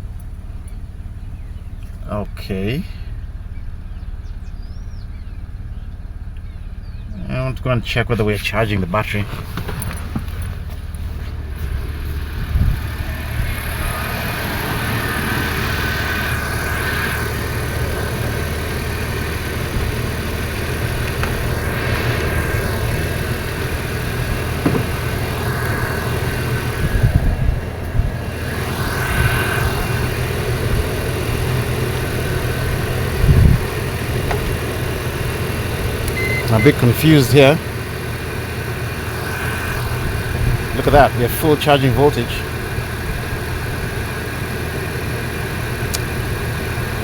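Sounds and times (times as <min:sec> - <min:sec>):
car engine idling: 0:00.0 - 0:47.0
short knocks: 0:24.5 - 0:25.2.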